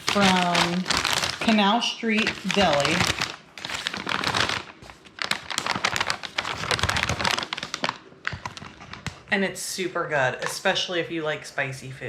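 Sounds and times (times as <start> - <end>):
paper wrapper crinkling: 0.0 - 9.3.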